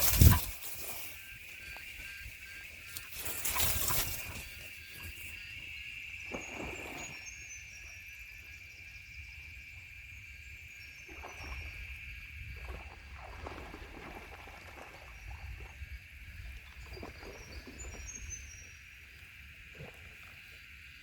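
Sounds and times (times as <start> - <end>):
soft rustles: 0.0 - 2.0, 2.8 - 5.2
steady high-pitched tone: 0.0 - 5.7.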